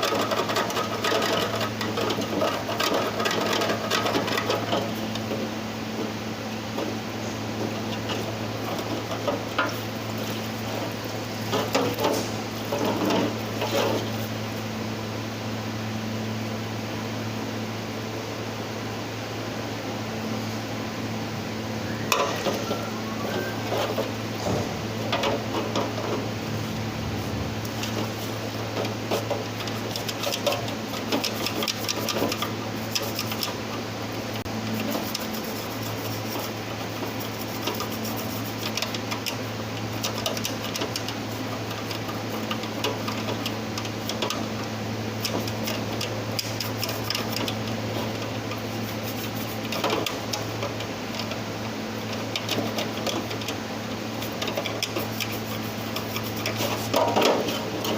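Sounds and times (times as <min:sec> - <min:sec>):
small irregular clicks and scrapes: 0:00.0 - 0:06.1, 0:07.6 - 0:14.3, 0:27.6 - 0:51.4, 0:52.0 - 0:57.9
steady low hum: 0:00.0 - 0:57.9.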